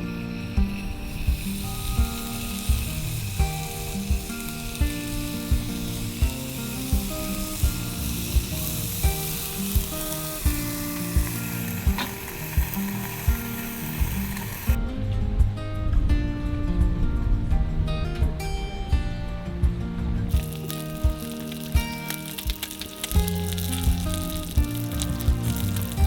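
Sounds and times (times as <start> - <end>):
meat sizzling: 0.0 - 14.8, 20.3 - 26.0
background music with beat: 0.0 - 26.0.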